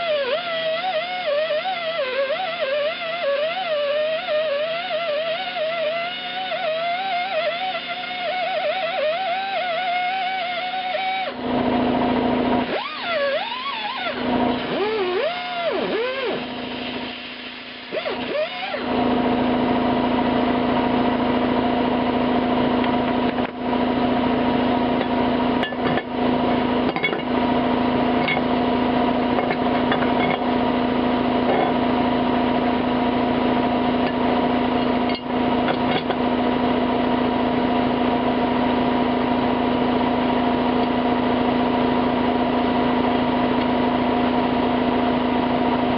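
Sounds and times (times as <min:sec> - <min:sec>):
power tool motor spinning: 0:00.0 - 0:20.2.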